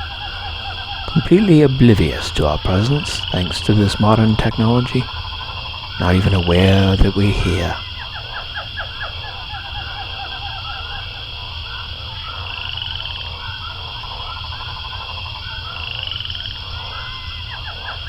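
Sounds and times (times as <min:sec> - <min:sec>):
frogs calling: 0:00.0 - 0:07.9.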